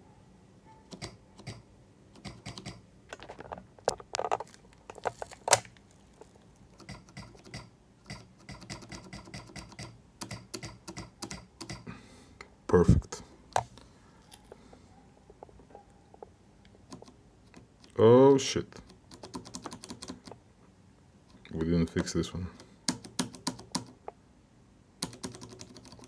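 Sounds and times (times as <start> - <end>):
keyboard keys clicking: 0.9 - 1.6, 2.2 - 2.8, 6.8 - 11.8, 18.8 - 20.4, 21.3 - 24.1, 25.0 - 26.0.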